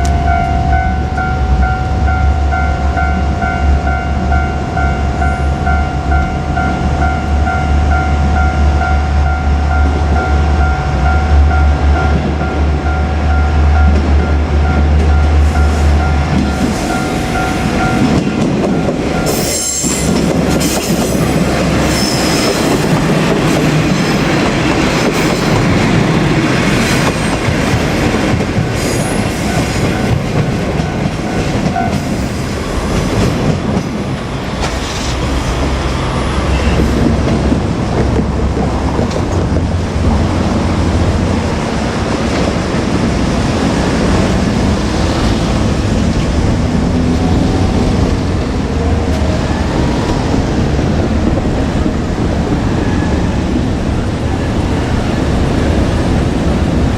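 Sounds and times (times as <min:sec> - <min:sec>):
two-tone crossing alarm ringing: 0:00.0 - 0:21.0
train wheels clattering on rails: 0:13.6 - 0:56.9.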